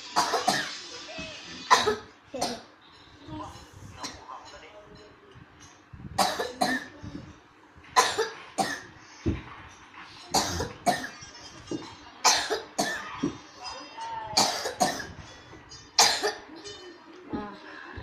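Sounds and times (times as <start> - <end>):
man coughing harshly: 1.7 - 2.6, 16.0 - 16.4.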